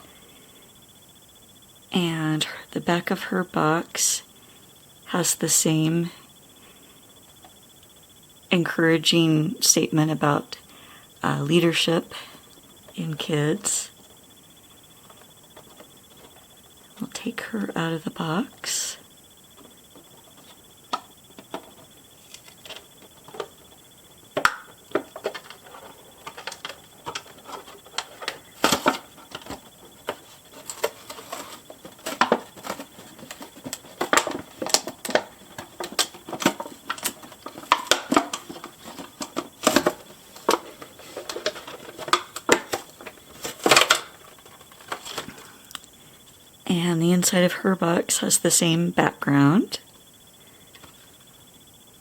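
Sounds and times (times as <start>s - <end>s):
doll packaging clicks and rustles: 15.0s - 17.8s, 19.6s - 46.0s.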